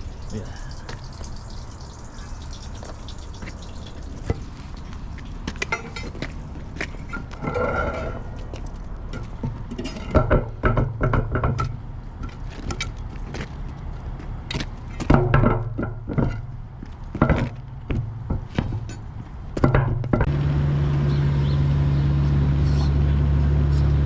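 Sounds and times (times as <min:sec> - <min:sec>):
metallic clanks and rattles: 0:00.0 - 0:08.5, 0:15.0 - 0:20.3
diesel engine running low: 0:20.2 - 0:24.0.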